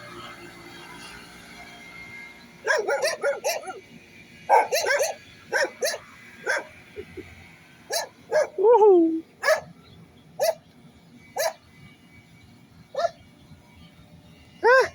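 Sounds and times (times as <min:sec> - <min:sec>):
dogs barking: 0:02.6 - 0:03.9, 0:04.5 - 0:07.3, 0:07.9 - 0:09.8, 0:10.4 - 0:10.6, 0:11.4 - 0:11.6, 0:12.9 - 0:13.2.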